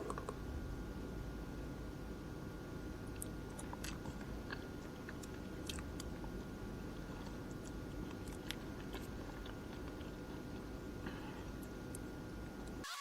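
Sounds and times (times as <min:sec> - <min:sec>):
electric fan humming: 0:00.0 - 0:12.8
person chewing food: 0:03.0 - 0:12.8.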